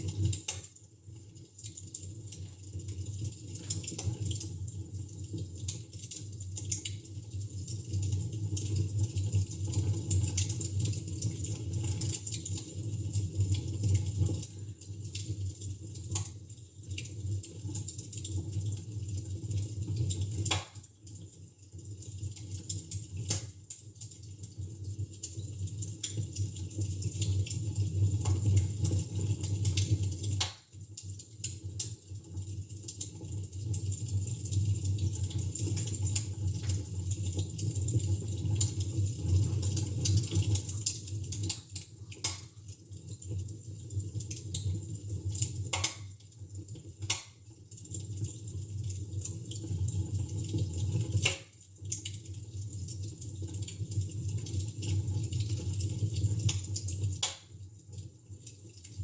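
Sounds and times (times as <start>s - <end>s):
fire crackling and popping: 0.0s - 7.8s, 13.8s - 28.4s, 36.1s - 49.6s, 51.1s - 52.3s.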